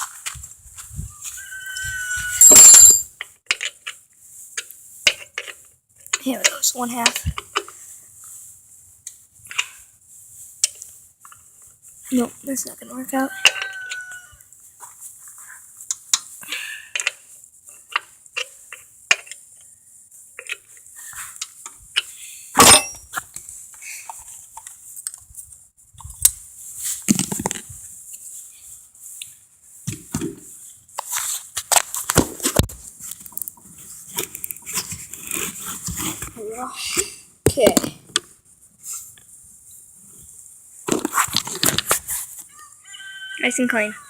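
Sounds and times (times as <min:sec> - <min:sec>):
metal tools clinking: 0:02.4 - 0:03.1, 0:22.6 - 0:23.1.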